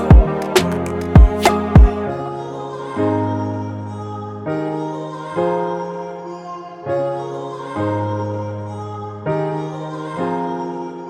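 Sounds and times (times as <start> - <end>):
kick drum hits: 0.1 - 0.3, 1.2 - 2.0.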